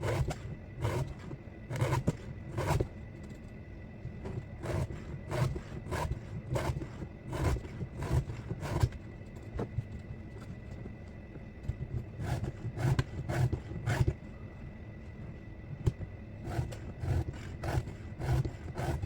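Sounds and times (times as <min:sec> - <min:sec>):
hand file rasping on chain: 0:00.0 - 0:02.9, 0:04.6 - 0:09.0, 0:11.9 - 0:14.2, 0:16.4 - 0:19.0.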